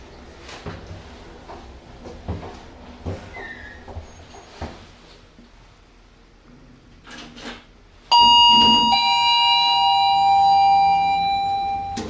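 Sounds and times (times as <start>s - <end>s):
lift two-tone chime: 8.1s - 12.0s.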